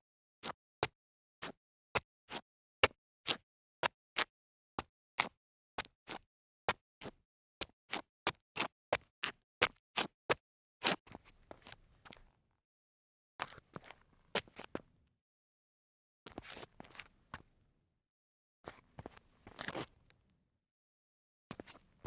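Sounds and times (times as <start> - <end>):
sneaker steps on concrete: 13.4 - 14.9, 16.3 - 17.5, 18.7 - 19.9
shoe scrape: 16.3 - 17.1, 18.7 - 20.0, 21.5 - 22.0
faint foot shuffles: 18.7 - 19.9.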